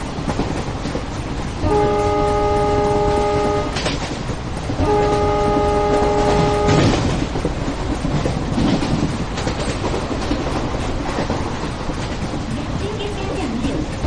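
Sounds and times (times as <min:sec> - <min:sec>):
running train rumble: 0:00.0 - 0:14.0
train horn blasts: 0:01.6 - 0:03.9, 0:04.8 - 0:07.2.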